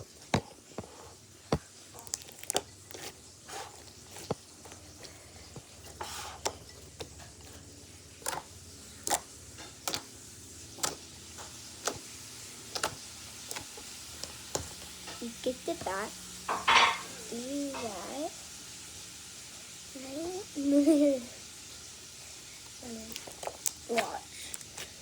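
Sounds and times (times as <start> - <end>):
wet squelches of squishy mixture: 0.2 - 7.6, 8.2 - 14.9, 22.6 - 25.0.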